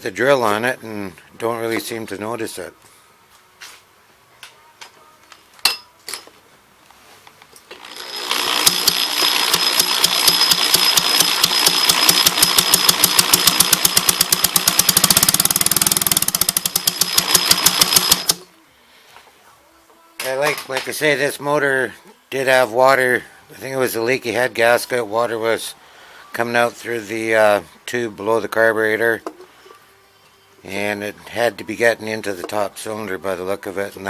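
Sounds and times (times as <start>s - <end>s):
power drill whine: 7.7s - 18.4s
outboard motor turning over: 7.8s - 18.4s.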